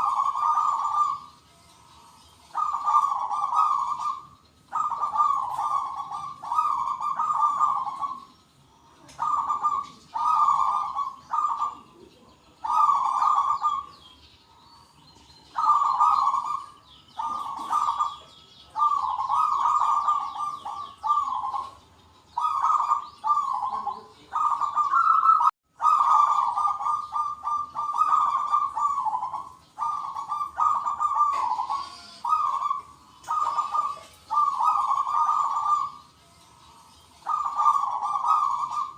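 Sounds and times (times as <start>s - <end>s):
doves cooing: 0.0s - 14.2s, 14.8s - 38.9s.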